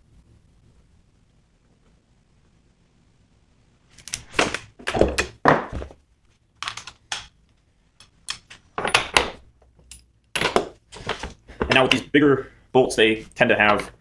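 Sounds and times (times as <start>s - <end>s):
tools clunking on a workbench: 8.0s - 12.1s.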